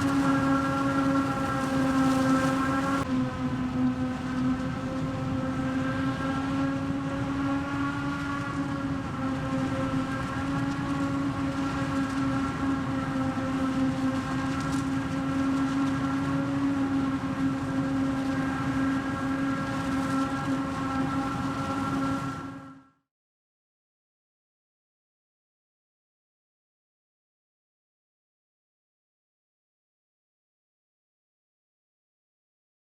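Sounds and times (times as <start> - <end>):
machine hum with whine: 0.0 - 23.0.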